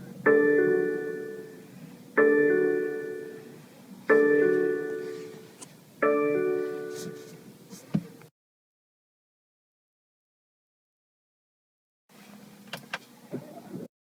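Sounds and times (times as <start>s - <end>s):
car warning gong chiming: 0.0s - 7.5s.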